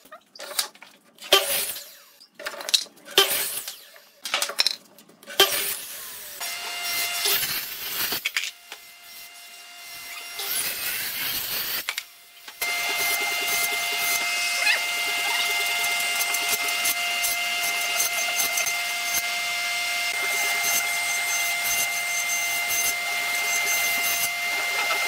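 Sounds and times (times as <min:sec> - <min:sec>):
small power tool whining: 0:05.3 - 0:25.0.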